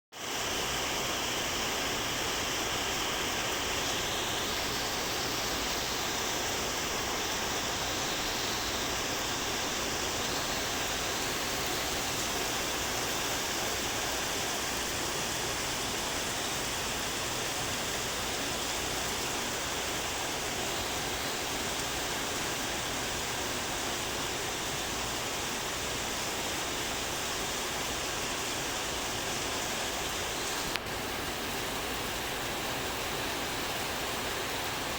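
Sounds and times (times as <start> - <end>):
rain falling steadily: 0.1 - 34.9.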